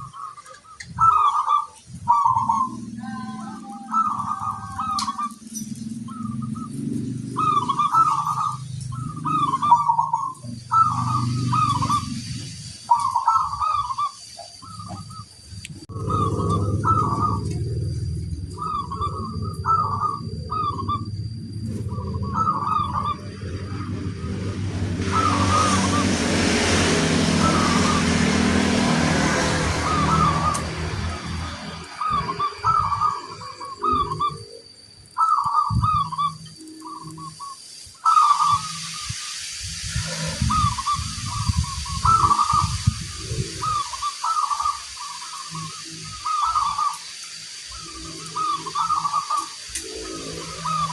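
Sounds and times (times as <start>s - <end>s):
dove cooing: 0.0s - 12.2s, 12.9s - 15.2s, 15.9s - 21.2s, 21.8s - 26.2s, 27.2s - 38.9s, 40.0s - 47.1s, 47.7s - 50.9s
hiss: 4.3s - 15.8s, 35.9s - 50.9s
low rumble: 14.6s - 34.7s.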